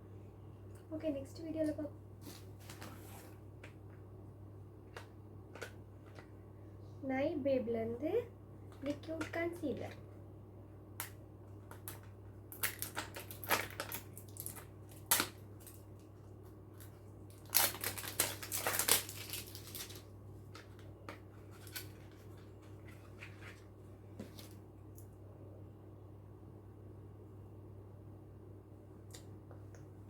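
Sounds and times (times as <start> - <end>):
faint low hum: 0.0 - 30.0
packaging rustling and crinkling: 11.7 - 16.1, 16.7 - 24.6.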